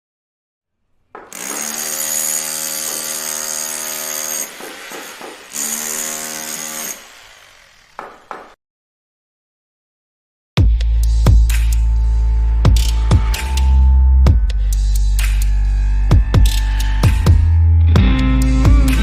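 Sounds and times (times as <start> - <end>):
power tool motor whining: 1.2 - 8.6.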